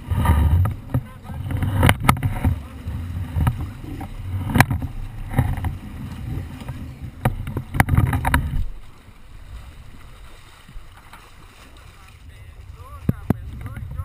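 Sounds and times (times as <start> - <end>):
boat rumble: 0.0 - 14.0
sharp knocks and thuds: 0.1 - 8.8.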